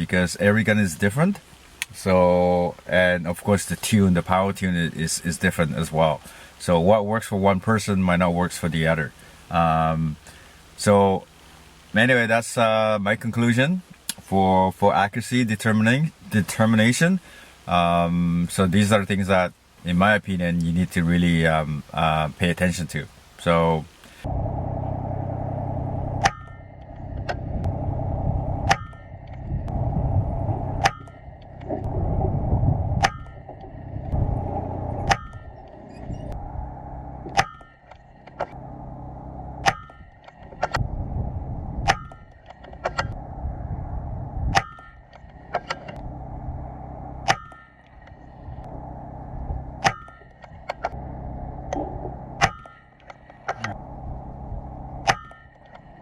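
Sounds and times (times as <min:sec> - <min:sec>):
low rushing noise: 0:24.1 - 0:56.0.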